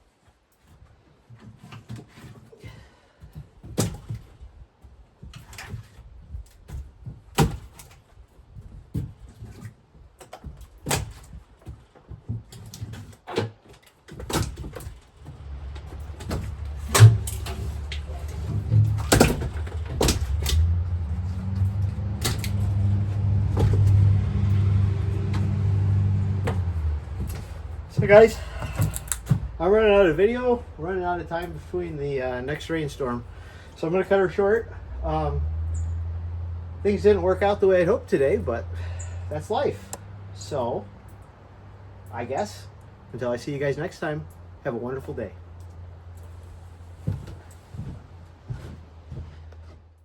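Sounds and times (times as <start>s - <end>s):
wooden knocks of firewood: 1.3s - 30.5s
wood pieces knocking: 14.1s - 24.0s, 26.4s - 30.6s
tractor engine running: 15.2s - 49.8s
maul striking firewood: 26.4s - 30.1s.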